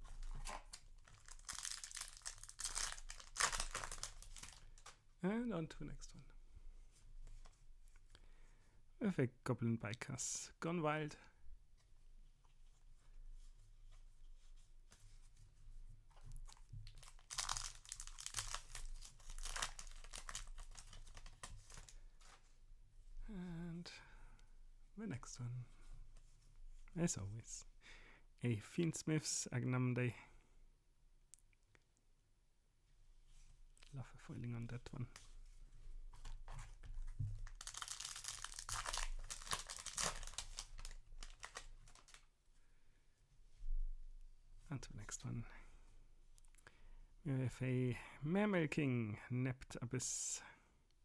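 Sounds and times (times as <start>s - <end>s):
foil wrapper crinkling and tearing: 0.4s - 4.9s, 16.8s - 22.0s, 37.4s - 42.2s.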